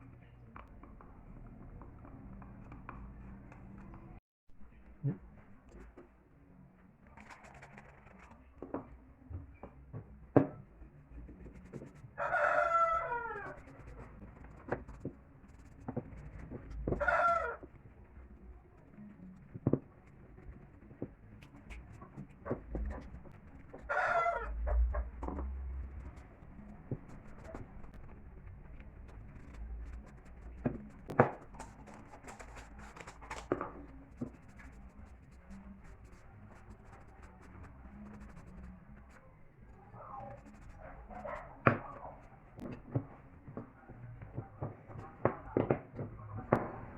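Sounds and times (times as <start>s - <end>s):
rooster crowing: 12.2s - 13.6s, 17.0s - 17.6s, 23.9s - 24.8s
light scratching and ticks: 13.2s - 42.7s.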